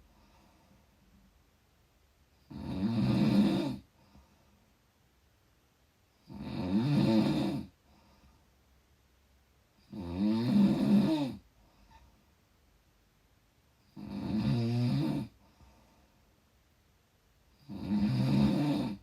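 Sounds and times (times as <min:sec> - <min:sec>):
person snoring: 0:02.5 - 0:03.9, 0:06.2 - 0:07.7, 0:09.8 - 0:11.4, 0:13.9 - 0:15.4, 0:17.6 - 0:19.0.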